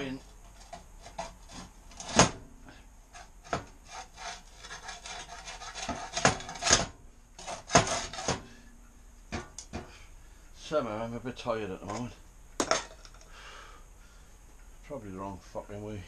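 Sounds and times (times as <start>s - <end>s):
hard pieces scraping: 0.4s - 2.4s, 3.1s - 8.5s.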